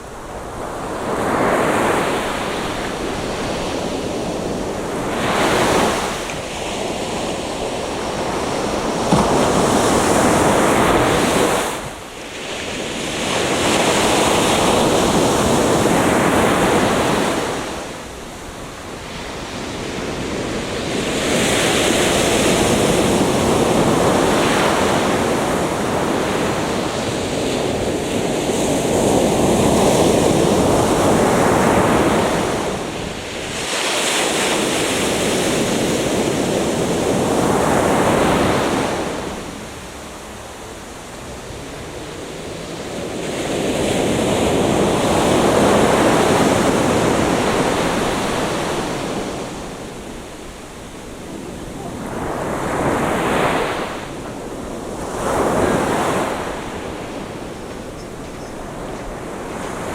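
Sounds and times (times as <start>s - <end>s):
surf breaking on a beach: 0.0s - 59.9s.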